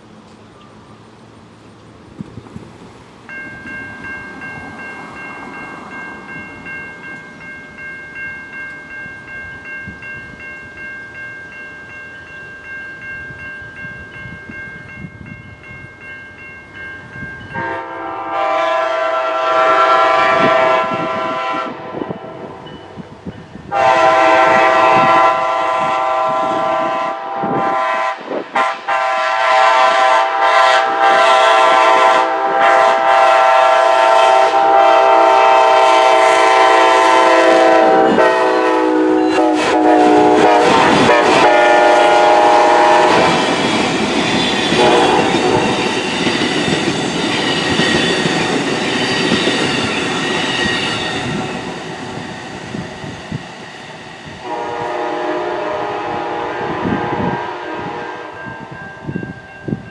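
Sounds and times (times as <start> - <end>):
locomotive air horn chord: 17.5 - 22.6, 23.7 - 43.4, 44.8 - 45.8, 54.4 - 58.5
train wheels rumbling and clattering: 36.8 - 55.0.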